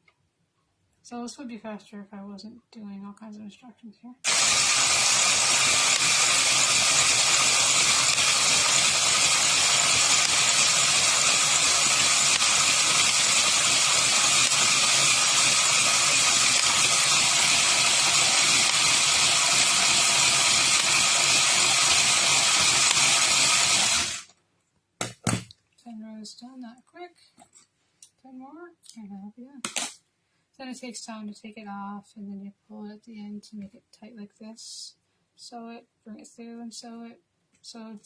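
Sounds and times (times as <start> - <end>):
drill and knitting machine whir: 4.2 - 24.3.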